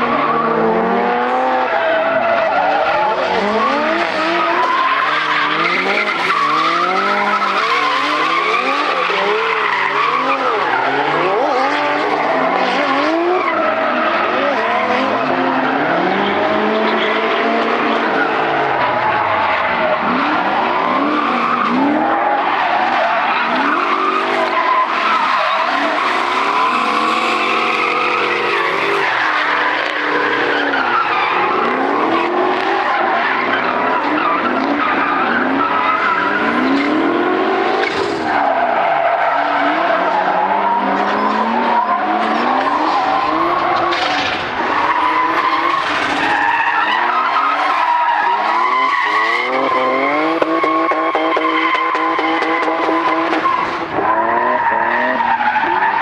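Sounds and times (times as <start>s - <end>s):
car engines revving: 0.0s - 56.0s
tyres squealing: 1.7s - 12.6s, 13.3s - 36.8s.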